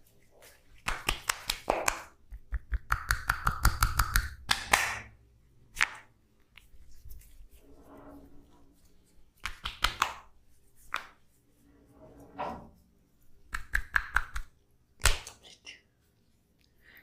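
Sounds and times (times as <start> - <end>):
hand slaps and taps on skin: 0.8 - 5.1, 5.8 - 6.7, 9.4 - 10.3, 10.9 - 11.2, 13.5 - 15.4.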